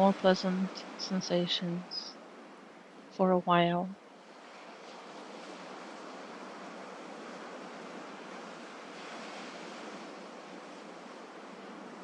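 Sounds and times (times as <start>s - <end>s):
sea waves washing on shore: 4.1s - 12.0s.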